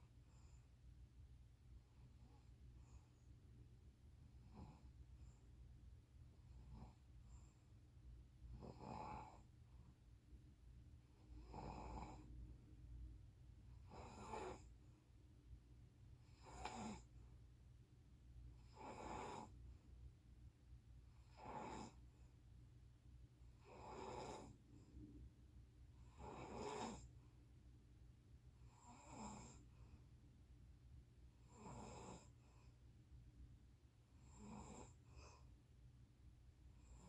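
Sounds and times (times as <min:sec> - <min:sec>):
person snoring faintly: 0:08.6 - 0:09.5, 0:11.3 - 0:12.4, 0:13.9 - 0:14.7, 0:16.3 - 0:17.1, 0:18.6 - 0:19.6, 0:21.2 - 0:22.0, 0:23.6 - 0:24.9, 0:26.0 - 0:27.1, 0:28.7 - 0:29.7, 0:31.4 - 0:32.7, 0:34.2 - 0:35.4.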